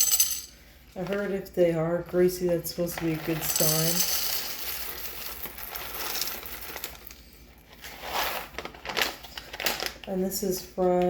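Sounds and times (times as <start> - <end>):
coffee beans shifting: 0.0 - 1.3, 2.9 - 10.0
bag crinkling and rustling: 4.5 - 10.1.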